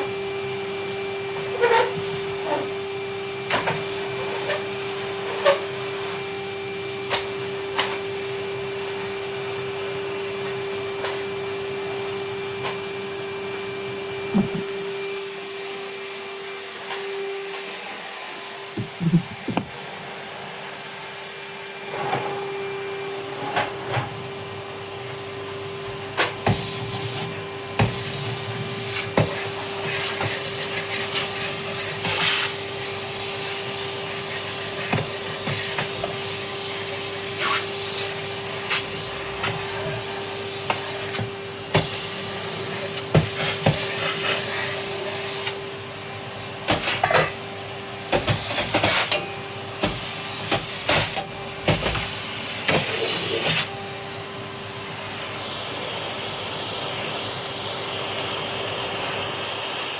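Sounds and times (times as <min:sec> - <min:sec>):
vacuum cleaner running: 0:00.0 - 0:59.9
cleaning tool knocking and scraping: 0:18.8 - 0:19.8.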